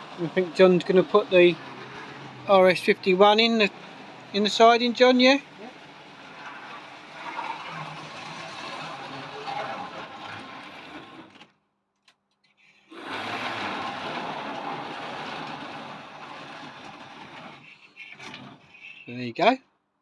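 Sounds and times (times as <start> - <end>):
model train motor whirring: 0.0 - 11.5, 12.8 - 19.2.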